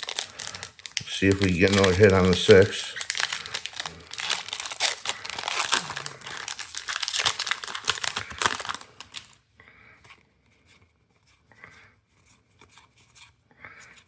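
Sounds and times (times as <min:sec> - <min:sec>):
foil wrapper crinkling: 0:00.0 - 0:09.4.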